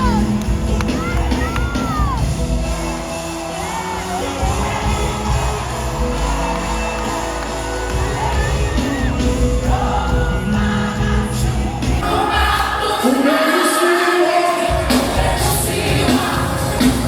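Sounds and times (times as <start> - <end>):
crowd shouting and whooping: 0.0 - 13.6
live gospel band: 0.0 - 17.0.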